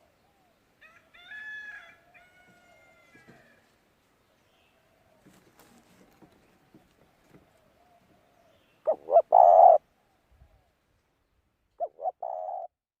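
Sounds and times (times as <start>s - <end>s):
bird calling: 7.7s - 9.8s, 11.8s - 12.7s
faint thin bird calls: 11.8s - 12.7s.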